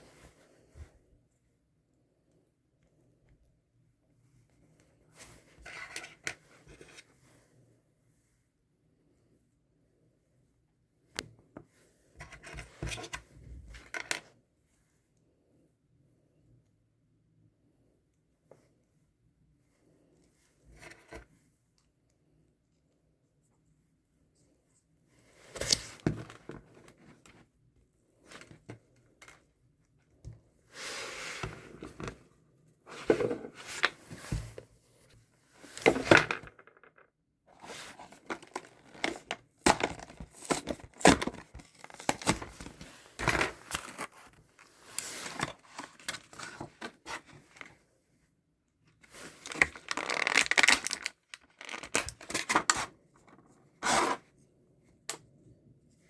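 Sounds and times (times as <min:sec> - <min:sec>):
packaging rustling: 0:49.2 - 0:52.8.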